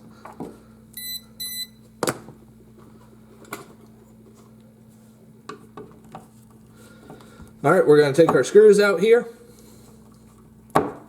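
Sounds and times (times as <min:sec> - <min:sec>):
short electronic beeps: 0:01.0 - 0:01.8.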